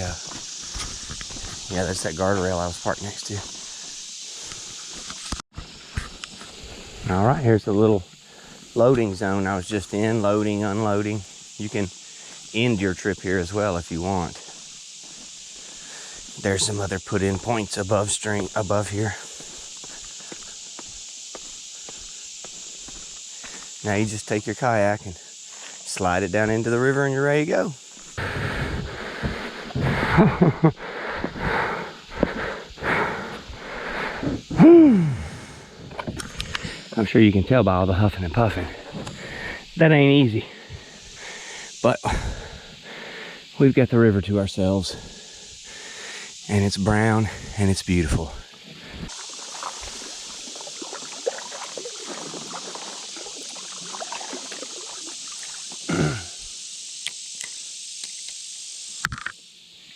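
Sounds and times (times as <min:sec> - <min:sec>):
insects hissing: 0:00.0 - 0:59.9
man breathing hard: 0:15.5 - 0:16.3, 0:28.2 - 0:36.9, 0:38.8 - 0:39.7, 0:40.4 - 0:43.5, 0:45.0 - 0:46.4
man grunting: 0:34.6 - 0:35.3, 0:55.9 - 0:56.3
water lapping against kayak: 0:48.6 - 0:55.9.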